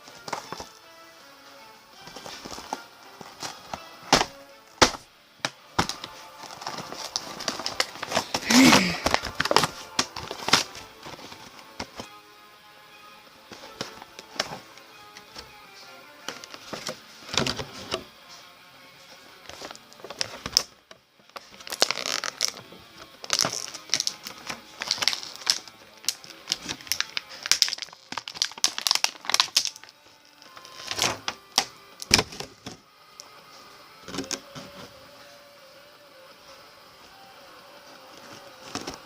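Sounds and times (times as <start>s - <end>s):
faint music: 0.0s - 39.0s
plastic packaging crackling: 2.0s - 12.1s, 19.5s - 32.8s.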